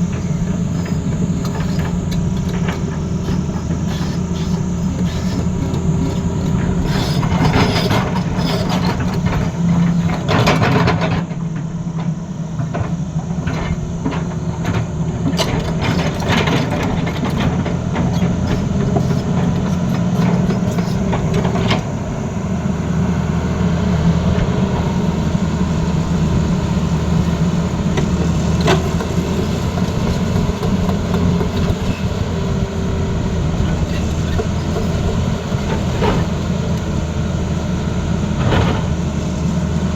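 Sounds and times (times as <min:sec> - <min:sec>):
excavator diesel engine running: 0:00.0 - 0:39.9.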